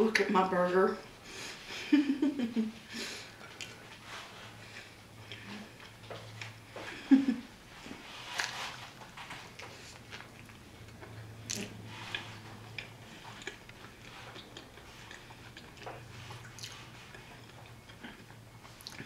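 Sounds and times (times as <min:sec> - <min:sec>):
person chewing food: 0:03.2 - 0:07.1, 0:07.8 - 0:19.0.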